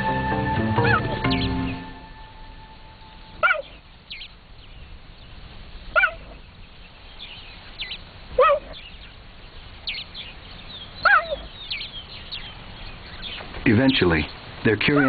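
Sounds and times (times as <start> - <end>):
fainter higher chirps: 0.0 - 4.4
cheetah chirping calls: 0.8 - 2.0, 2.8 - 15.0.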